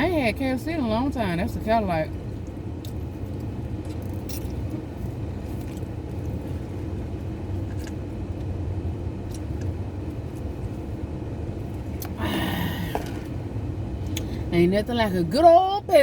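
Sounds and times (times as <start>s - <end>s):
car cabin rumble: 0.0s - 16.0s.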